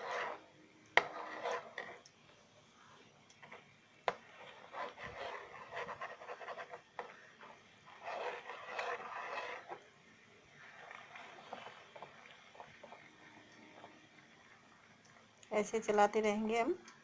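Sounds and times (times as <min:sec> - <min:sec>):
spoon scraping a pan: 0:04.2 - 0:09.8, 0:10.6 - 0:14.0.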